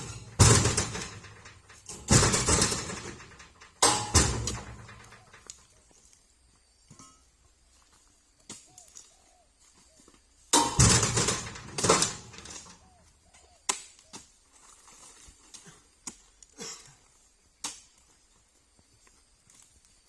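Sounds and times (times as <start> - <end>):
loud rustling crashes: 0.0 - 5.4, 10.6 - 12.8.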